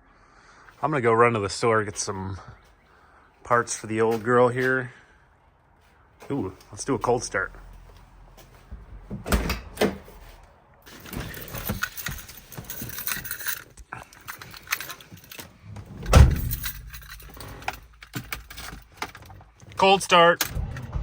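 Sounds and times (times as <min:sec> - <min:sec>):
keys jangling: 0:10.9 - 0:19.4
car engine starting and running: 0:20.4 - 0:21.0.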